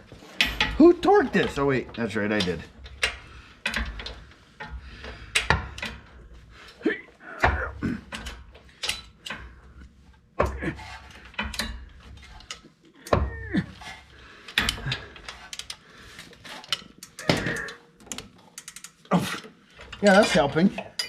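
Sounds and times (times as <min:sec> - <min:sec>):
metal hand tools clinking: 0:18.6 - 0:21.0.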